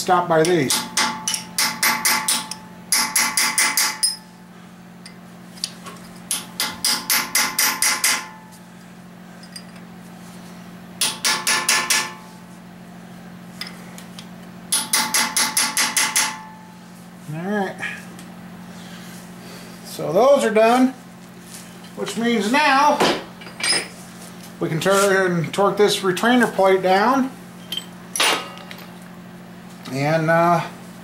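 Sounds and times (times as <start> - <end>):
steady low hum: 0.0 - 31.0
hammer tapping on chisel: 11.0 - 12.2.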